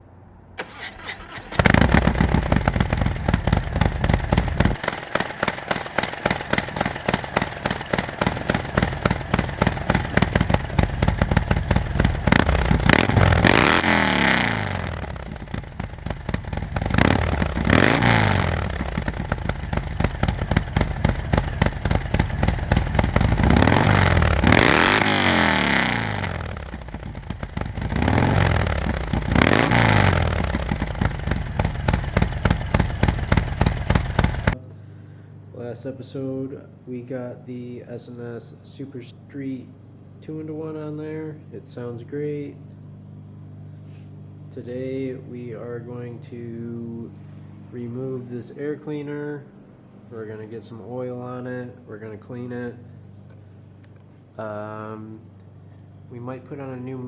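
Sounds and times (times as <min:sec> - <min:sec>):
motorcycle engine idling and revving: 0:00.6 - 0:34.6.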